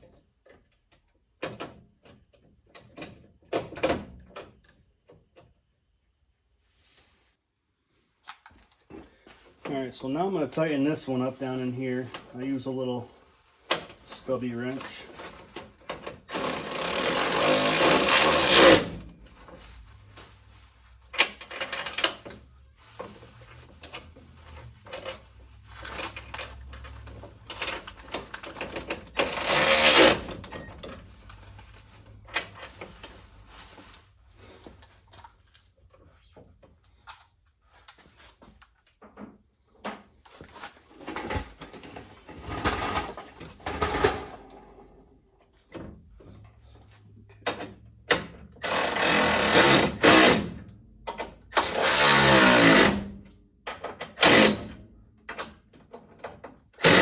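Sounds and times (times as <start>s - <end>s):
wrench tightening bolts: 16.3s - 18.8s, 29.1s - 30.3s, 48.6s - 50.4s, 51.6s - 53.0s, 54.2s - 54.6s, 56.8s - 57.0s
tool and hardware clinks: 41.0s - 44.9s.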